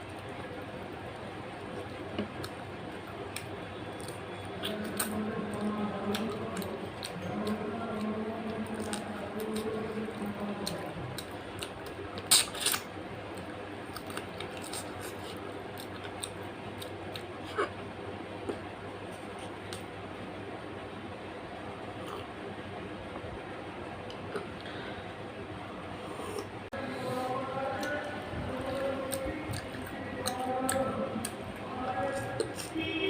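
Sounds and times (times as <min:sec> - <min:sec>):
person chewing: 0:01.6 - 0:17.8, 0:21.9 - 0:22.4, 0:24.0 - 0:24.8, 0:26.0 - 0:26.6, 0:27.3 - 0:32.9.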